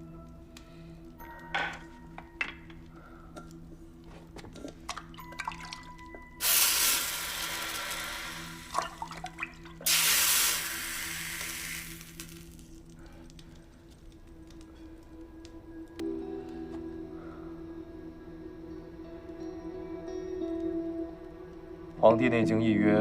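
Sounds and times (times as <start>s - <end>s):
water hissing into steam: 6.4s - 12.6s.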